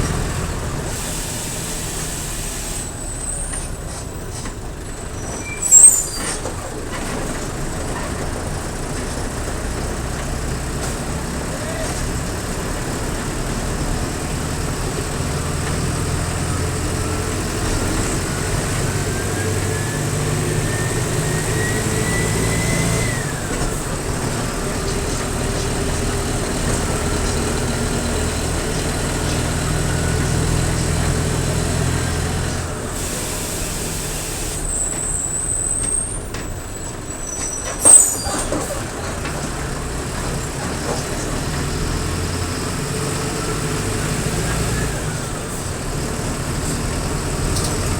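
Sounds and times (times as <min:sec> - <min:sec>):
bus diesel engine pulling: 0:00.0 - 0:47.9
air brake hiss: 0:00.9 - 0:03.4, 0:32.9 - 0:35.9
rising turbo whistle: 0:19.0 - 0:23.4.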